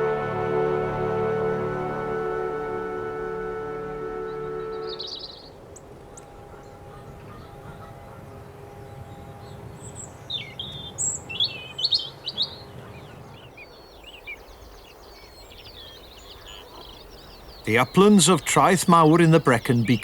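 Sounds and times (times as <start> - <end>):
songbirds singing: 9.4 - 20.0.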